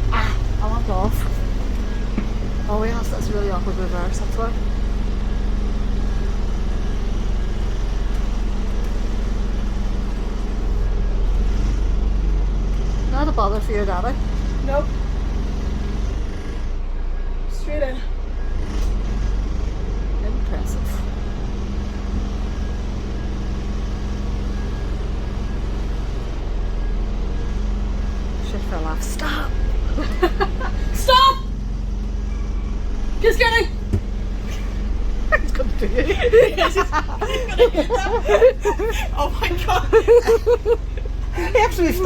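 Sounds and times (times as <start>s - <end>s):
bus engine humming: 0.0s - 42.0s.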